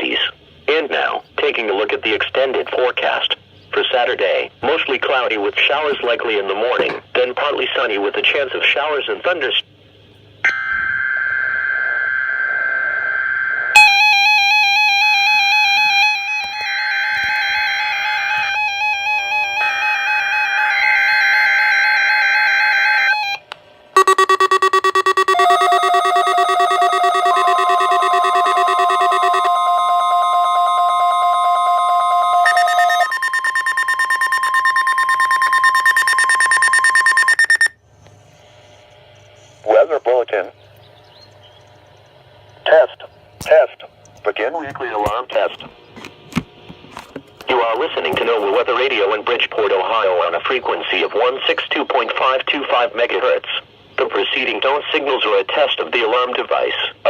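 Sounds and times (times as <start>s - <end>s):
warbling two-pitch alarm tone: 10.5s - 23.3s, 24.0s - 37.8s
rapid pulsing beep: 24.0s - 37.8s
steady electronic alert tone: 24.0s - 37.8s.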